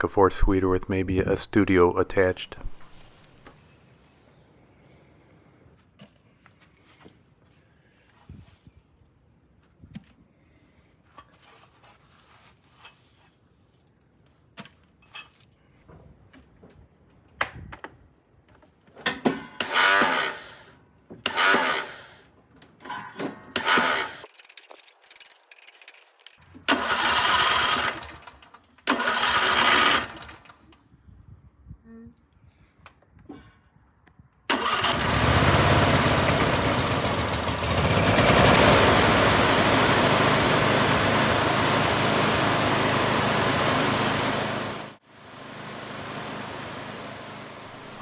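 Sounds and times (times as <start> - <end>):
mower starter cranking engine: 2.1 - 3.5, 19.6 - 22.2, 23.2 - 30.7, 34.5 - 48.0.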